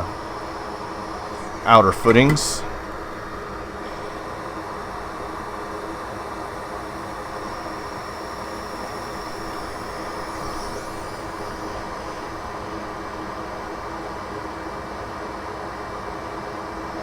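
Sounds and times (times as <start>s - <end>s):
faint high whine: 0.0s - 14.2s
small fan running: 0.0s - 14.6s.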